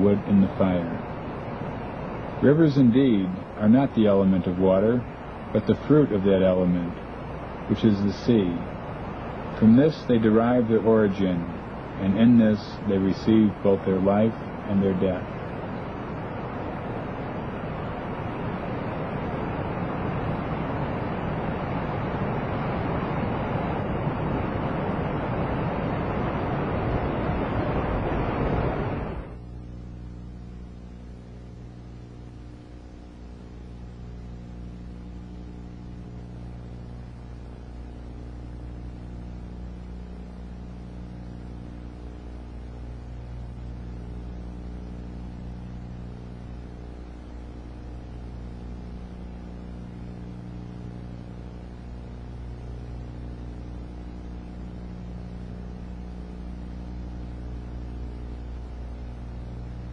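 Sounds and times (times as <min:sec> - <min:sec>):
loud rush of noise: 0:00.0 - 0:31.3
low drone of held tones: 0:00.0 - 0:59.9.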